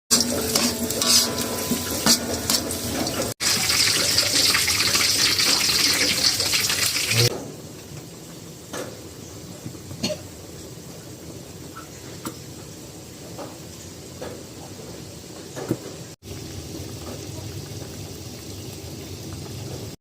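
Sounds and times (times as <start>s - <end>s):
water running from a tap: 0.1s - 7.3s, 16.2s - 20.0s.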